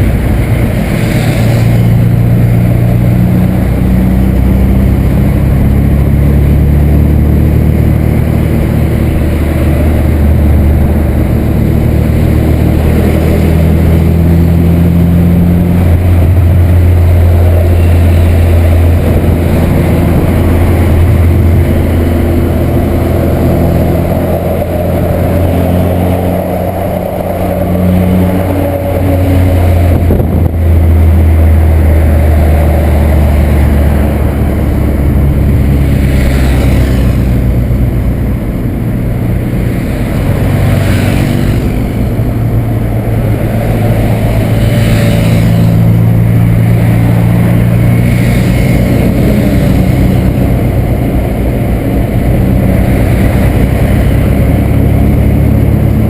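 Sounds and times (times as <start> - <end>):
car engine and exhaust droning: 0.0 - 56.0
road noise: 0.0 - 56.0.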